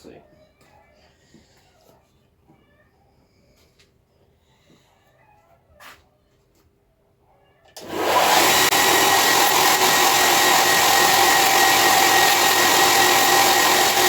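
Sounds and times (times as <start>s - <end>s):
belt grinder running: 7.8s - 14.0s.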